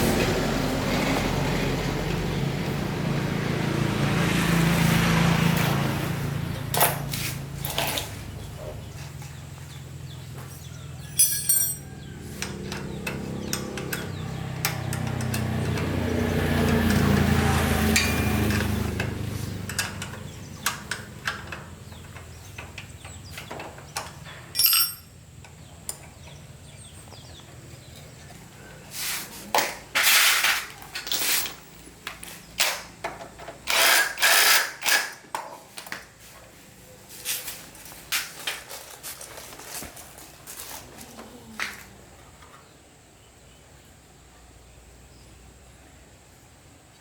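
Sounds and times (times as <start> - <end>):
tools clicking and knocking: 11.0 - 16.0, 17.9 - 26.2
small motorbike engine running: 11.9 - 24.1.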